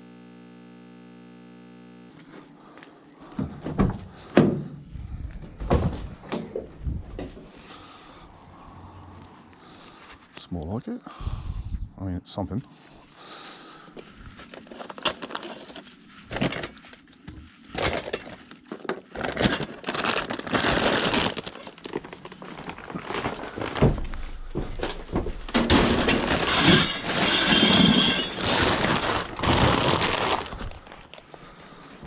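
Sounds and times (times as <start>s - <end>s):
junk clattering and clinking: 23.7s - 28.5s.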